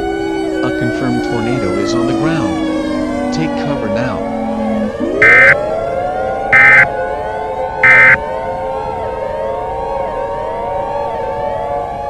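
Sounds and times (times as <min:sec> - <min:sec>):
siren wailing up and down: 0:00.0 - 0:07.2, 0:07.8 - 0:08.2
screeching digital data tone: 0:05.2 - 0:05.6, 0:06.6 - 0:06.9, 0:07.8 - 0:08.2.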